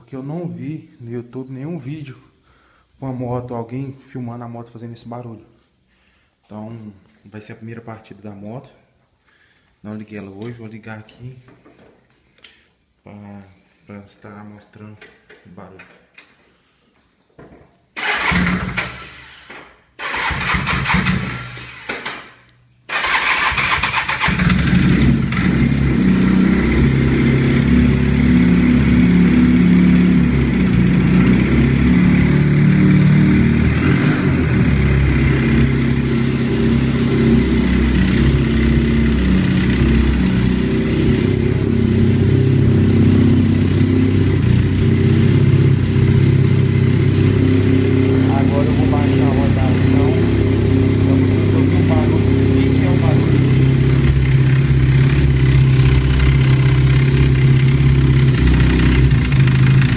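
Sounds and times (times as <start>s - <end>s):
person speaking: 0.0s - 2.4s, 3.0s - 5.5s, 9.8s - 11.5s, 13.0s - 16.1s, 47.4s - 53.9s
motorcycle engine cranking: 18.0s - 22.0s, 22.9s - 25.9s
motorcycle engine idling: 34.6s - 59.9s.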